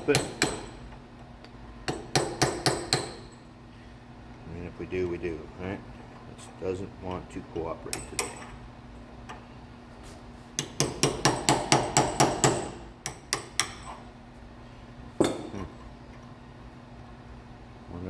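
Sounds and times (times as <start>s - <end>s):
hammer striking chisel: 0.0s - 0.9s, 1.9s - 3.4s, 7.9s - 8.6s, 10.6s - 14.0s, 15.2s - 15.6s.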